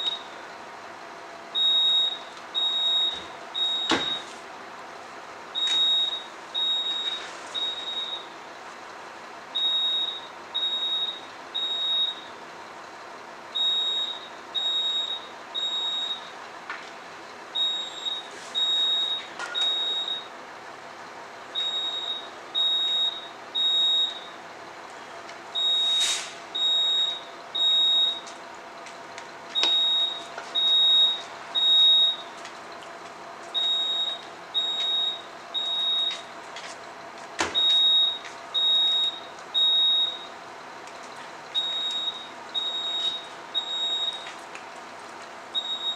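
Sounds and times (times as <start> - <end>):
fire alarm beeping: 0.0 - 0.4, 1.5 - 4.3, 5.6 - 8.4, 9.5 - 12.4, 13.5 - 16.4, 17.6 - 20.3, 21.5 - 24.4, 25.6 - 28.4, 29.5 - 32.4, 33.5 - 36.3, 37.5 - 40.4, 41.1 - 44.4, 45.5 - 45.9.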